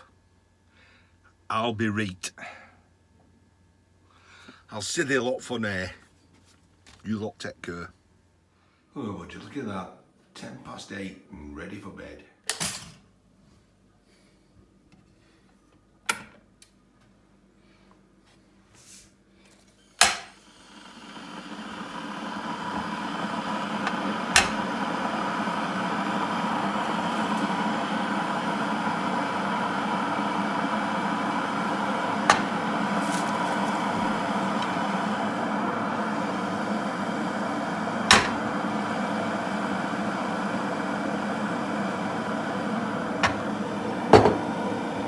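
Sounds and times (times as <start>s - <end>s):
appliance switch click: 20.0s - 20.4s, 23.8s - 25.3s, 38.0s - 38.6s
electric motor humming: 20.4s - 45.0s.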